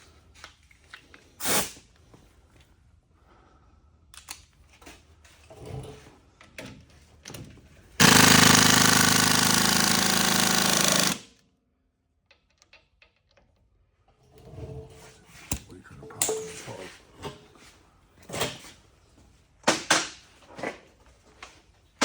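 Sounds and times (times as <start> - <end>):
impact wrench hammering: 8.0 - 11.2.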